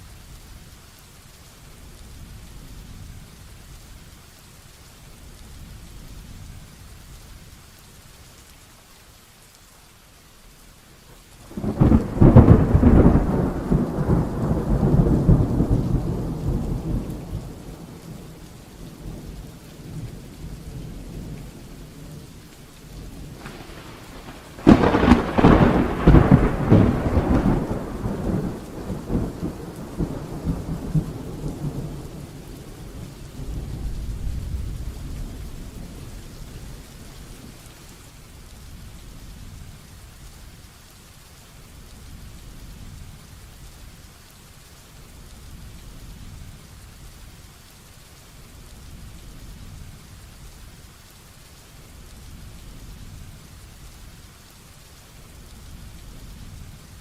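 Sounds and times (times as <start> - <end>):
heavy rain falling: 0.0 - 57.0
thunder rolling: 11.5 - 18.4, 23.1 - 36.0.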